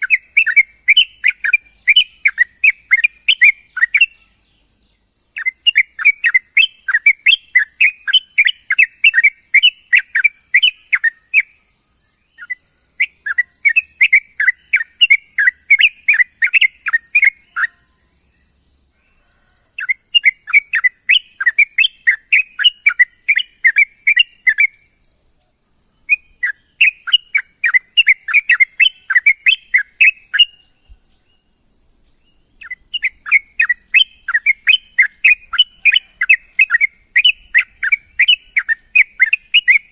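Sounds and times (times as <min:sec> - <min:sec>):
steady high hiss: 0:18.0 - 0:39.9.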